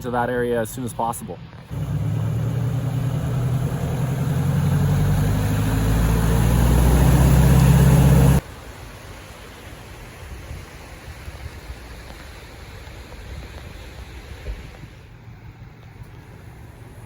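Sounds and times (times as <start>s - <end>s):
vehicle engine running: 1.6s - 8.4s.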